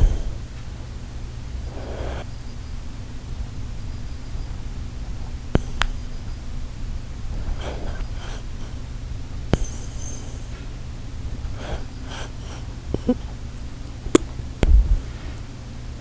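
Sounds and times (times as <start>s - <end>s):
dog snoring: 0.0s - 0.6s, 1.5s - 2.5s, 4.0s - 13.4s
steady low hum: 0.0s - 16.0s
sharp clicks: 4.4s - 6.7s.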